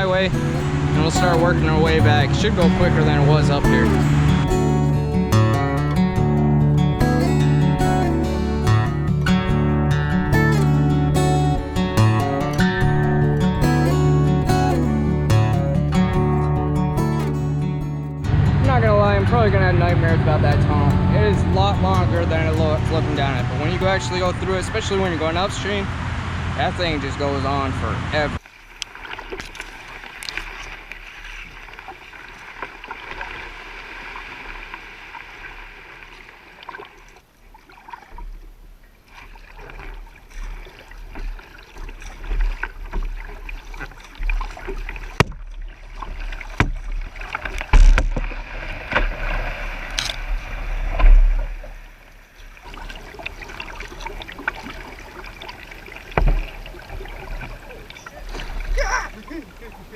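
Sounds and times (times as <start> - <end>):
water splashing at kayak hull: 0.0 - 59.9
low thumps: 0.4 - 28.4.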